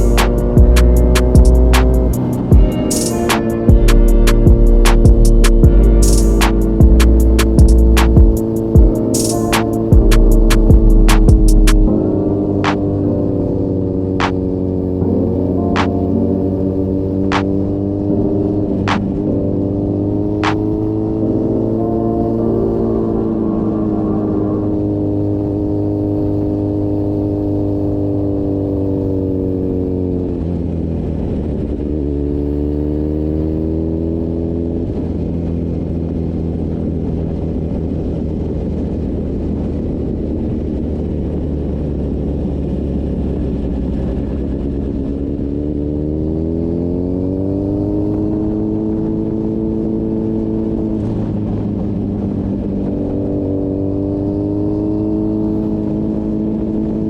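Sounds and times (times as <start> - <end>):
motorcycle engine and exhaust: 0.0 - 57.0.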